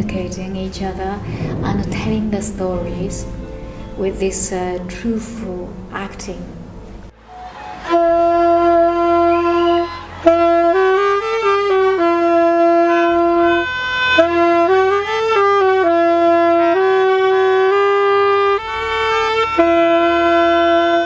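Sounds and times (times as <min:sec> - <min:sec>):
solo wind instrument melody: 0:07.2 - 0:21.0.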